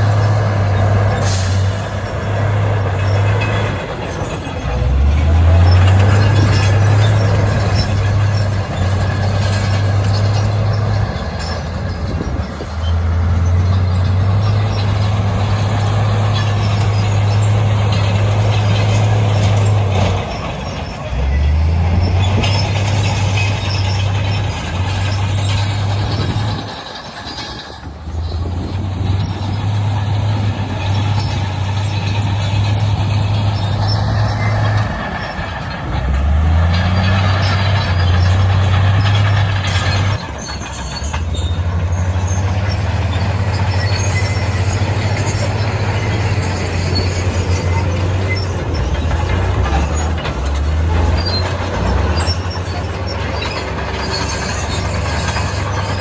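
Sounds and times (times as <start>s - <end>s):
heavy diesel engine under load: 0.0s - 56.0s.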